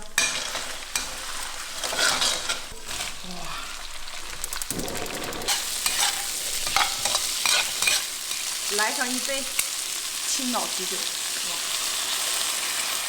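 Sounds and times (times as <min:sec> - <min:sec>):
stirring in a pan: 0:00.0 - 0:10.3
food sizzling in hot oil: 0:00.0 - 0:13.0.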